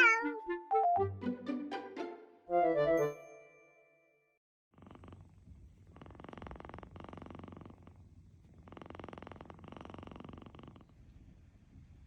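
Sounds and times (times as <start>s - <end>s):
kitten purring: 4.7s - 12.0s.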